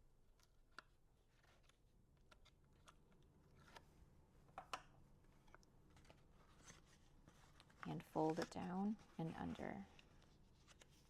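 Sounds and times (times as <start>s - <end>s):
faint paper rustles and ticks: 5.3s - 11.0s.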